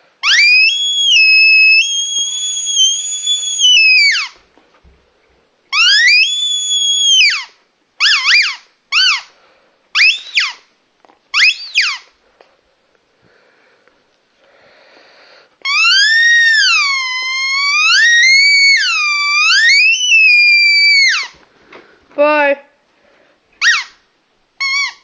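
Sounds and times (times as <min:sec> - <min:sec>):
dog toy squeaking: 0:00.2 - 0:04.4, 0:05.7 - 0:09.3, 0:10.0 - 0:10.6, 0:11.3 - 0:12.1, 0:15.6 - 0:21.4, 0:23.6 - 0:24.0, 0:24.6 - 0:25.0.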